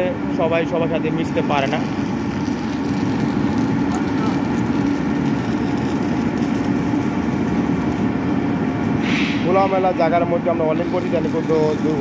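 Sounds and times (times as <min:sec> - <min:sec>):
machinery low hum: 0:00.0 - 0:12.0.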